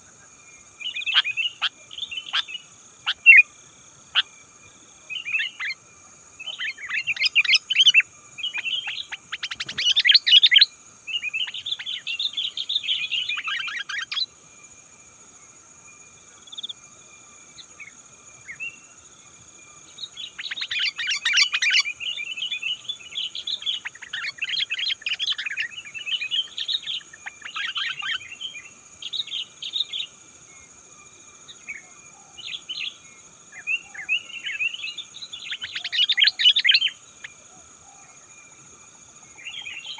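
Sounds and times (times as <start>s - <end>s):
bird singing chirpy phrases: 0.8s - 3.4s, 5.1s - 5.8s, 6.4s - 14.3s, 20.0s - 30.1s, 31.6s - 37.4s, 39.3s - 39.9s.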